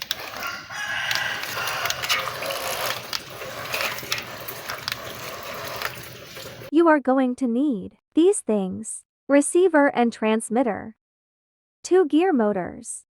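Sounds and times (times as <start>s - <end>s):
small clicks: 0.0s - 5.1s
water splashing and churning: 0.0s - 6.7s.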